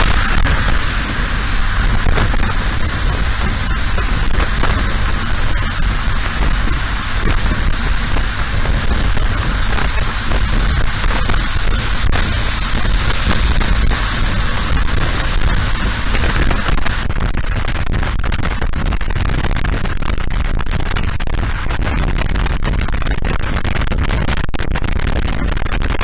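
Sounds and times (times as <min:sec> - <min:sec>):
motorcycle engine: 0:00.0 - 0:18.6
wind and road noise: 0:00.0 - 0:26.0.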